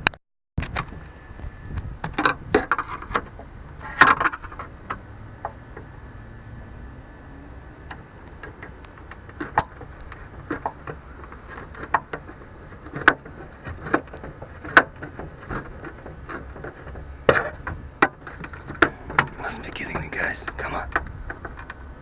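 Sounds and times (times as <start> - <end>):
tool prying and knocking plastic: 7.9 - 21.8.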